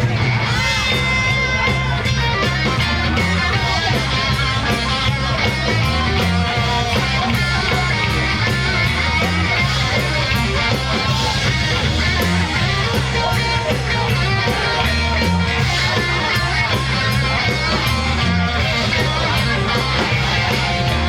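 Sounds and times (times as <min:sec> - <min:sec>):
guitar: 0:00.0 - 0:21.0
rock band playing: 0:00.0 - 0:21.0.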